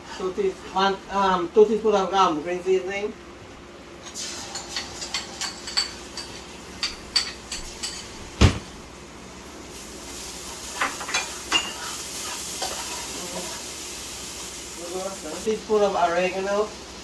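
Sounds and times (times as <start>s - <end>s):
seasoning sizzling in pot: 4.0s - 17.0s
metal spoon clinking on pot: 10.8s - 11.9s.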